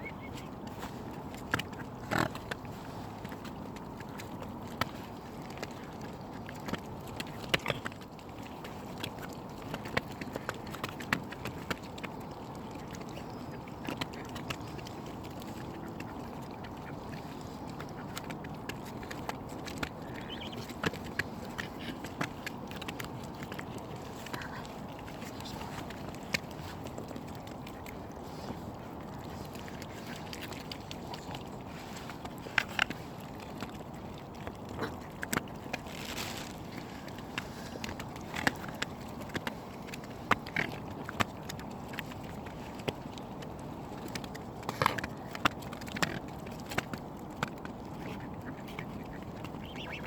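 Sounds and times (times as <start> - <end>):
bills snapping and pecking: 0.1 - 50.0
ducks quacking: 48.4 - 50.0.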